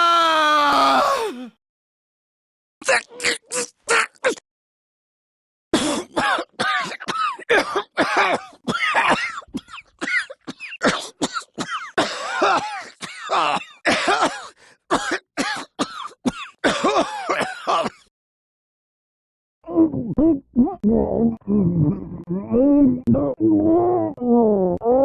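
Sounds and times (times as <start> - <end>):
person coughing: 5.8 - 18.1.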